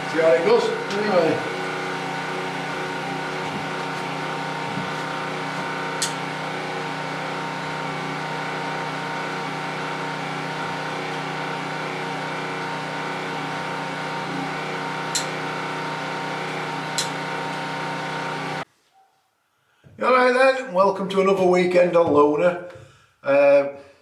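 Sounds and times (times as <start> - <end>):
steady machine hum: 0.0 - 18.6.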